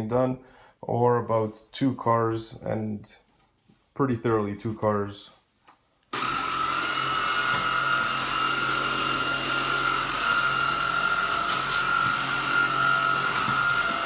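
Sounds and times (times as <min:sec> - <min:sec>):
vacuum cleaner whine and air rush: 0:06.1 - 0:14.0.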